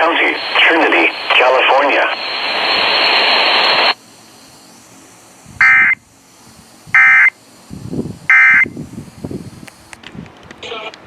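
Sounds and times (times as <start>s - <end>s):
loud static hiss: 0.0s - 11.0s
two-tone digital warble bursts: 5.6s - 6.1s, 6.8s - 7.4s, 8.3s - 8.8s.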